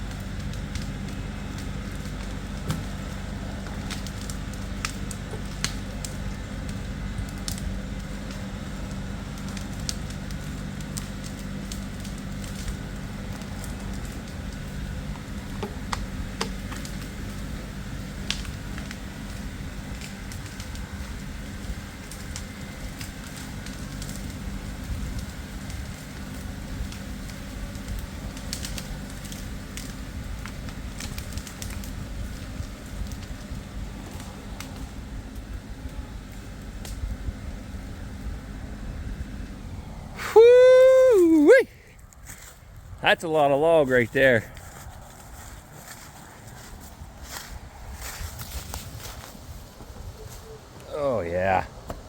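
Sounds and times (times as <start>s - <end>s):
wood and brush snapping: 0.0s - 37.8s, 40.2s - 42.7s, 44.5s - 50.9s
tractor diesel engine under load: 0.0s - 40.4s.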